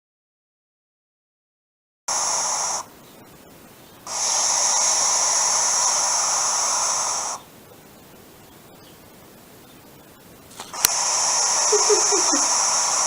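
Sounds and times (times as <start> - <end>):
barn owl hissing: 2.1 - 3.0, 4.0 - 7.5, 10.5 - 13.0.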